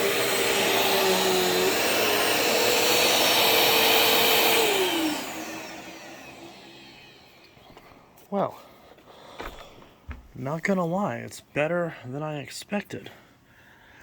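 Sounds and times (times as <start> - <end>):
vacuum motor whine spinning down: 0.0 - 8.0.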